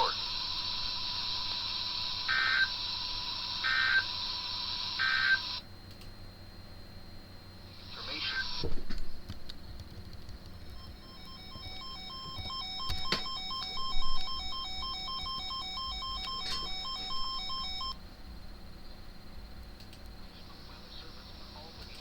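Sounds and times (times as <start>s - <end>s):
faint high whine: 0.0s - 22.0s
sharp clicks: 5.9s - 6.1s, 19.8s - 20.2s
two-pitch electronic alert beeping: 10.8s - 18.0s.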